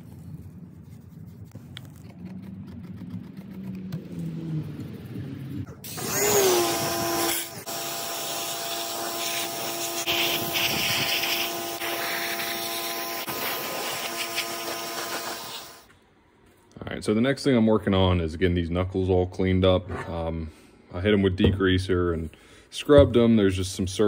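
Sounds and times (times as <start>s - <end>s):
power tool motor running: 5.9s - 15.8s.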